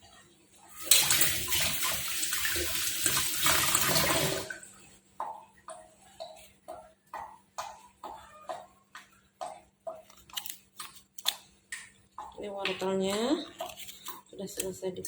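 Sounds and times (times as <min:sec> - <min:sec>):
tap water running: 0:00.6 - 0:10.0.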